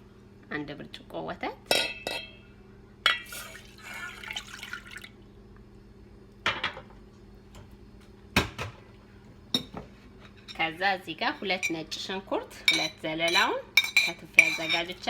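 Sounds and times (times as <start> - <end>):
milk splashing into pot: 3.2 - 5.1
kitchenware clinks: 12.7 - 15.0.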